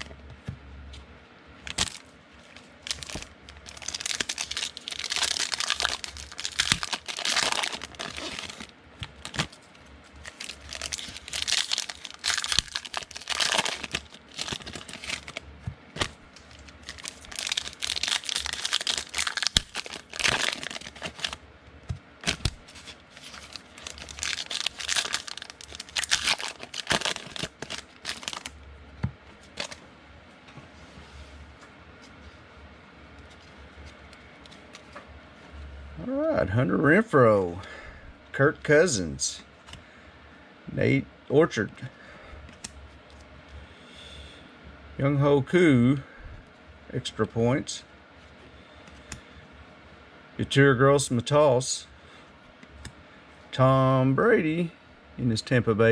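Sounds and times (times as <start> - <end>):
foil wrappers tearing and crinkling: 1.7 - 2.0, 2.8 - 15.4, 16.0 - 21.4, 22.2 - 28.6, 29.5 - 29.8.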